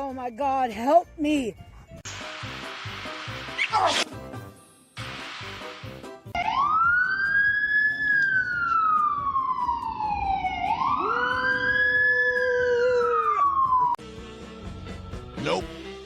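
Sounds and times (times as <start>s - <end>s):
hiss: 2.1s - 4.1s, 5.0s - 6.3s
siren wailing: 6.4s - 14.0s.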